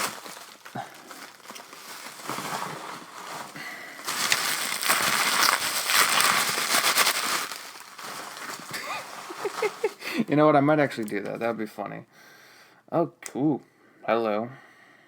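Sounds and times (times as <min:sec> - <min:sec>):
plastic packaging crinkling: 0:00.0 - 0:10.2.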